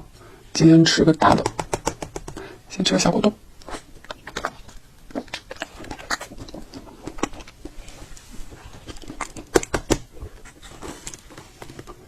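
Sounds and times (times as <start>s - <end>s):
chewing clicks: 3.6s - 7.8s, 8.7s - 10.0s
wet smacking mouth sounds: 3.6s - 12.0s.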